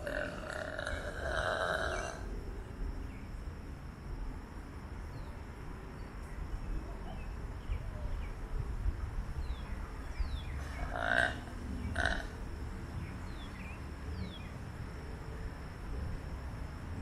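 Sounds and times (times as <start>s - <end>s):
burps: 0.0s - 2.2s, 10.8s - 12.3s.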